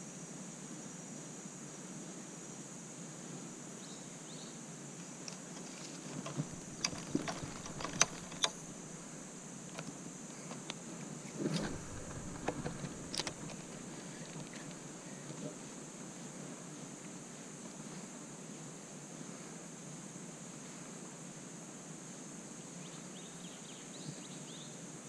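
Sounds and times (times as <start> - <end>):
steady hiss: 0.0 - 25.0
sharp clicks and knocks: 6.2 - 9.9, 11.5 - 14.8
dull knocks: 6.3 - 9.2.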